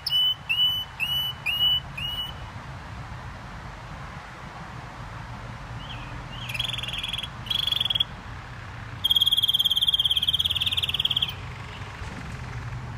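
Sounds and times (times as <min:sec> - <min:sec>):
canary singing rolling trills: 0:00.0 - 0:02.4, 0:05.8 - 0:08.1, 0:09.0 - 0:12.0.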